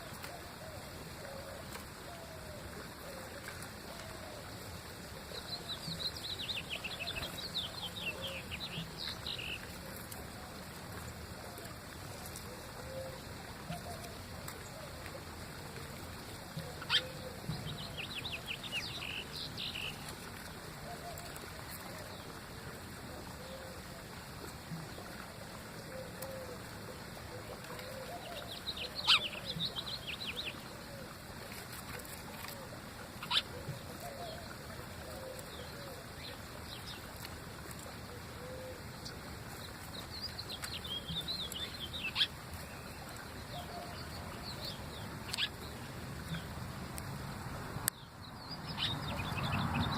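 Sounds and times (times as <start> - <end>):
steady background hiss: 0.0 - 49.9
small birds twittering: 3.4 - 10.3, 16.5 - 22.4, 27.6 - 47.0, 47.9 - 49.9.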